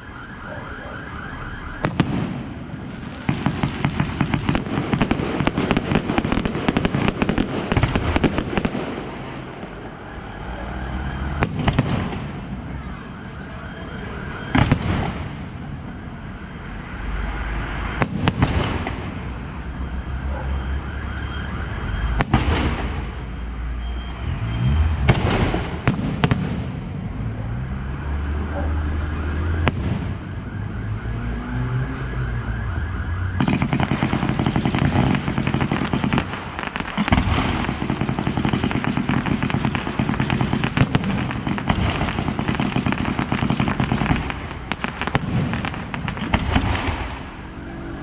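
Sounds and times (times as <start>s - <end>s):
loud firework bangs: 1.8s - 9.6s, 11.2s - 12.8s, 14.5s - 15.7s, 17.9s - 19.4s, 22.1s - 23.3s, 25.0s - 27.0s, 29.6s - 30.3s, 33.4s - 47.5s
fireworks crackling bangs: 1.8s - 10.0s, 11.2s - 12.9s, 14.5s - 15.9s, 17.8s - 19.6s, 22.1s - 23.8s, 24.8s - 27.1s, 29.6s - 30.2s, 33.4s - 47.5s.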